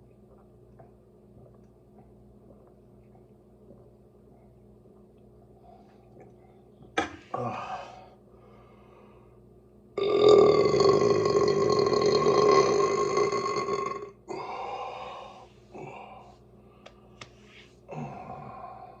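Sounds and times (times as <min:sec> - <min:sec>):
person belching: 0:10.0 - 0:14.5.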